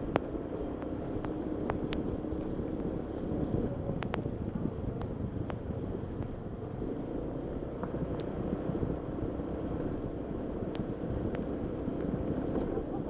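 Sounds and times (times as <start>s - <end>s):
light ticks: 0.0s - 2.9s, 3.9s - 6.5s, 7.7s - 8.4s, 10.6s - 12.7s
wind buffeting microphone: 0.0s - 7.1s, 7.7s - 13.0s.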